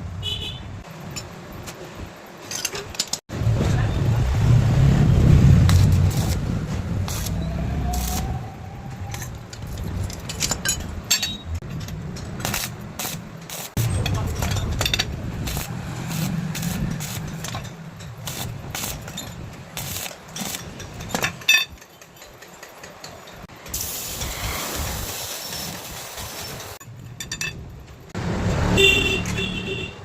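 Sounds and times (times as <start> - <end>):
metal pieces clinking and knocking: 9.1 - 12.8, 13.4 - 15.6, 16.9 - 23.5, 26.5 - 27.7.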